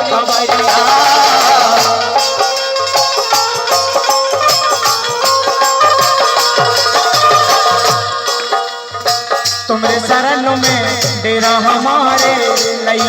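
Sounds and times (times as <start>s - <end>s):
melody instrument: 0.2s - 9.7s
quick drum beat: 0.4s - 13.0s.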